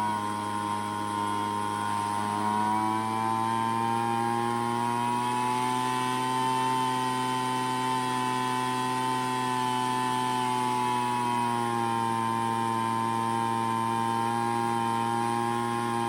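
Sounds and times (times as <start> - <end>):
leaf blower engine running: 0.0 - 16.0.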